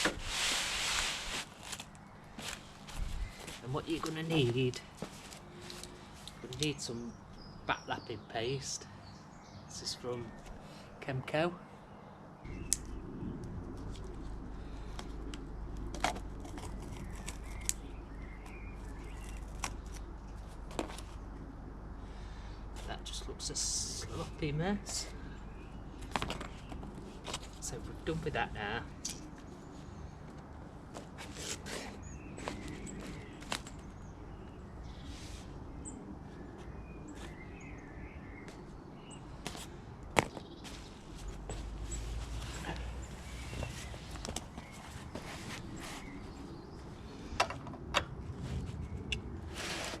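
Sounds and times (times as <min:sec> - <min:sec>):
steady low hum: 0:00.0 - 0:50.0
scraping on mower blades: 0:49.4 - 0:50.0.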